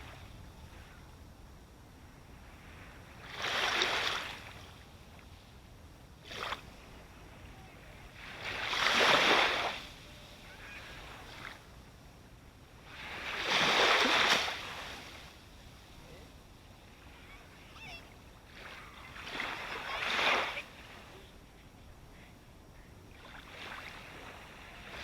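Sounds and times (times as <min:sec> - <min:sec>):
ocean waves breaking on shore: 0:00.0 - 0:25.0
small water splash: 0:03.3 - 0:04.8, 0:06.2 - 0:06.8, 0:08.2 - 0:10.0, 0:13.0 - 0:15.3.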